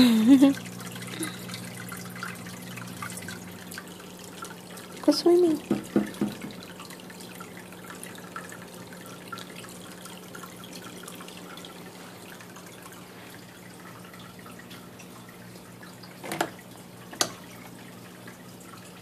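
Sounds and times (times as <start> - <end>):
water dripping and trickling: 0.0 - 19.0.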